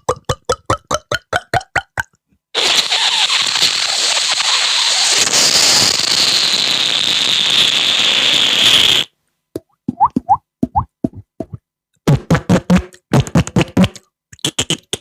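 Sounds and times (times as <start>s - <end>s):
loud hissing and crackling: 2.6s - 9.1s.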